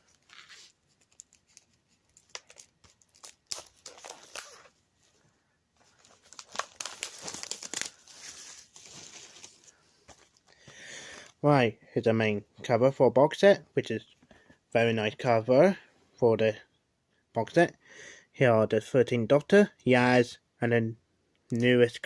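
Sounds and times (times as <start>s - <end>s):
plastic wrapping tearing and crinkling: 0.0s - 4.8s, 5.9s - 9.7s.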